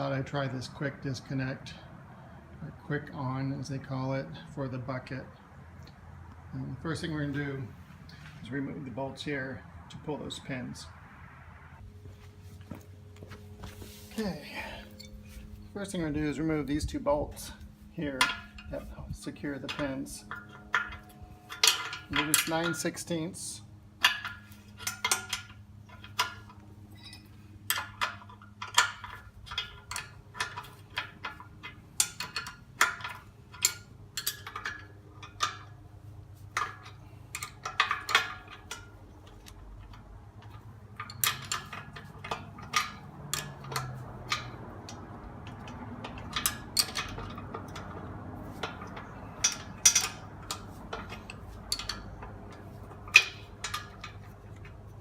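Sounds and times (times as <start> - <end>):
wrench clicking on bolt: 36.6 - 54.8.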